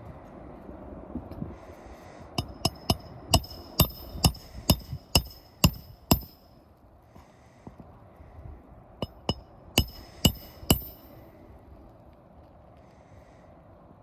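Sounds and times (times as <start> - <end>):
hammer striking nails: 2.4 - 6.5, 9.0 - 11.2.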